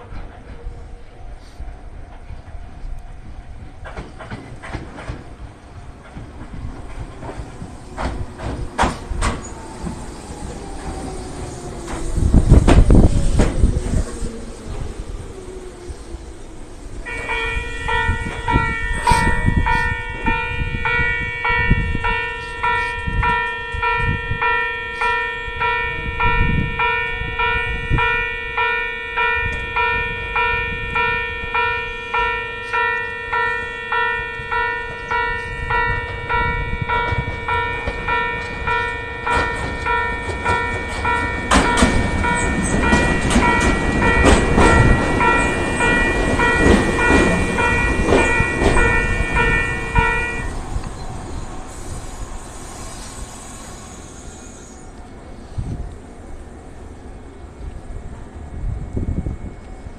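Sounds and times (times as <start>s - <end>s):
train wheels clacking over rail joints: 3.7s - 15.9s, 35.0s - 51.0s
level crossing alarm bell: 17.0s - 50.6s.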